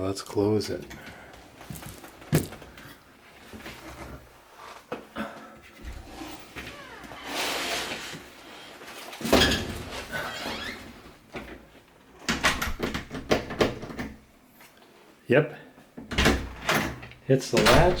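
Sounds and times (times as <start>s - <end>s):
door squeaking: 6.0s - 8.0s, 9.3s - 10.9s, 17.6s - 18.0s.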